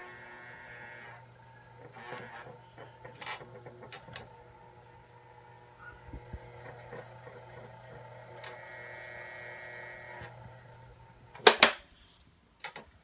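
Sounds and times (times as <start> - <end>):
electric fan buzzing and rattling: 0.0 - 13.0
loud click: 11.4 - 11.8.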